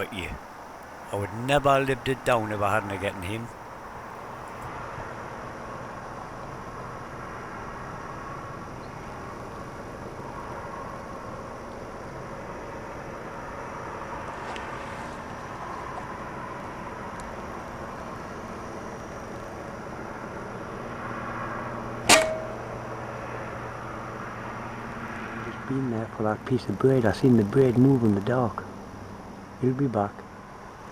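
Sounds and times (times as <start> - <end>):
faint hum and hiss: 0.0 - 30.9.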